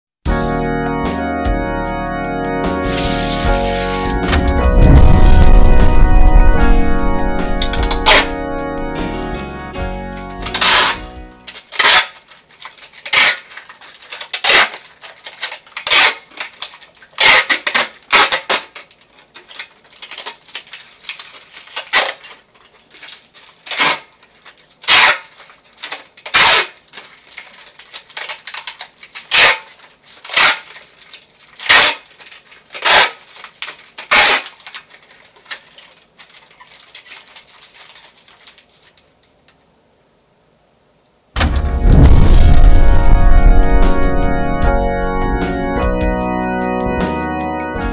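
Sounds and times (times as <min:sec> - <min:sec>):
adhesive tape ripping: 0:02.8 - 0:09.5, 0:10.2 - 0:39.4.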